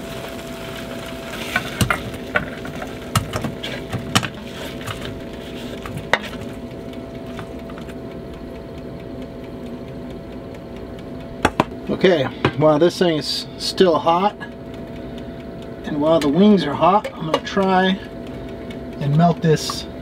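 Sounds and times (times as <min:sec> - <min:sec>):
chicken wings sizzling: 0:00.0 - 0:08.5
air fryer hum: 0:00.0 - 0:20.0
handling clicks and knocks: 0:01.6 - 0:06.6.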